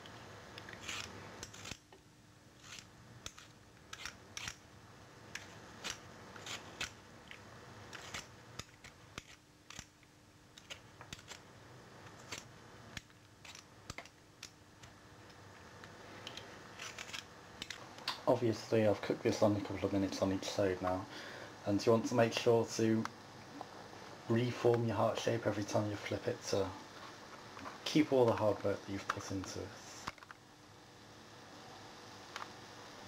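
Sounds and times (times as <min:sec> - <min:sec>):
peeler scraping potato: 0:00.6 - 0:01.8, 0:02.6 - 0:04.6, 0:05.3 - 0:07.0, 0:07.9 - 0:09.9, 0:10.6 - 0:11.4, 0:12.0 - 0:14.0, 0:16.7 - 0:17.8.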